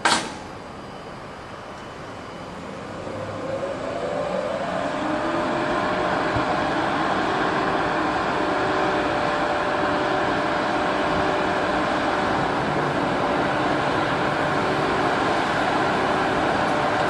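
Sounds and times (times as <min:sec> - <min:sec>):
train rumble and hiss: 0:00.0 - 0:17.0.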